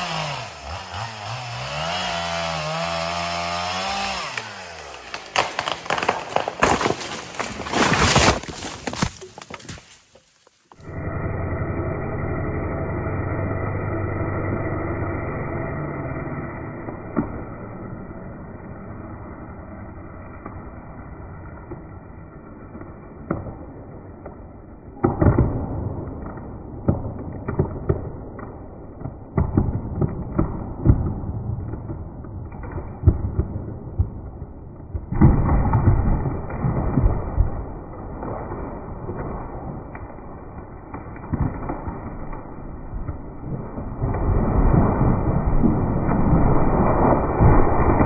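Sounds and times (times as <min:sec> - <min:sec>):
chainsaw idling: 0:00.0 - 0:07.9
tree cracking and crashing down: 0:00.0 - 0:10.8, 0:34.9 - 0:48.0.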